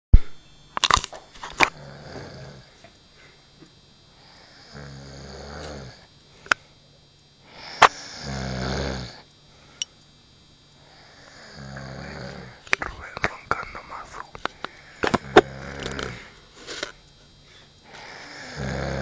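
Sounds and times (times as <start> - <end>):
man snoring: 1.7 - 2.8, 4.2 - 6.1, 7.5 - 9.2, 10.8 - 16.3, 17.8 - 19.0.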